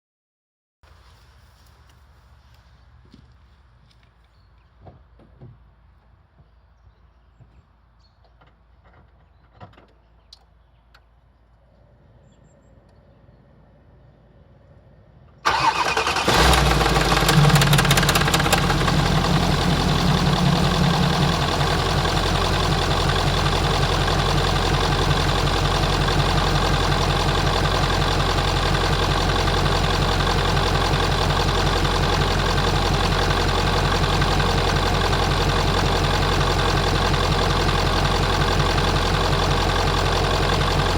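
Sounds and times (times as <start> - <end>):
diesel engine starting and idling: 15.4 - 40.9
engine clattering rattle: 15.5 - 40.9.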